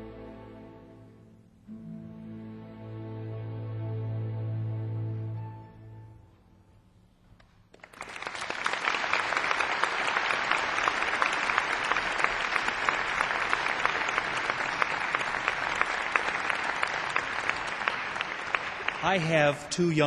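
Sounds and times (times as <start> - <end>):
audience applauding: 7.7 - 20.0.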